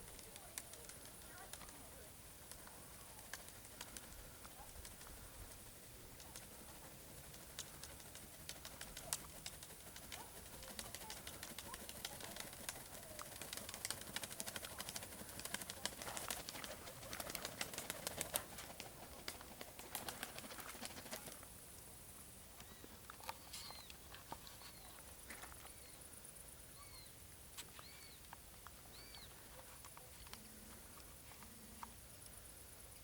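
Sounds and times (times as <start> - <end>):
pigeon wings flapping: 0.0 - 21.4.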